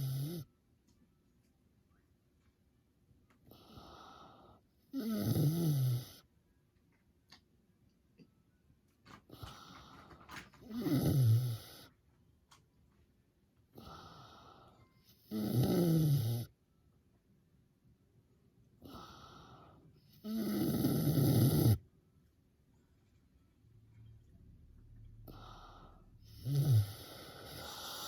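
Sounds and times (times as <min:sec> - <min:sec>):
pig snoring: 0:00.0 - 0:00.5, 0:03.5 - 0:06.2, 0:09.3 - 0:11.9, 0:13.8 - 0:16.5, 0:18.8 - 0:21.8, 0:25.2 - 0:28.0
soft breath: 0:25.2 - 0:28.0.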